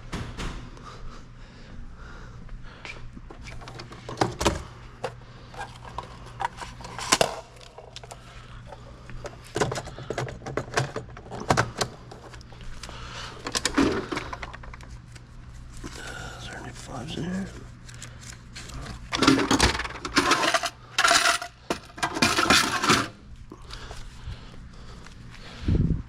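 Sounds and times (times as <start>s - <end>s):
steady low hum: 0.0s - 26.0s
keys and items rattling: 18.7s - 23.2s.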